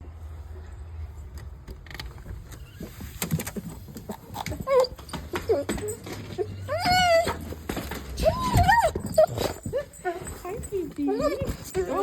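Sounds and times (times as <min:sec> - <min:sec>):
dog whining: 0:04.2 - 0:12.0.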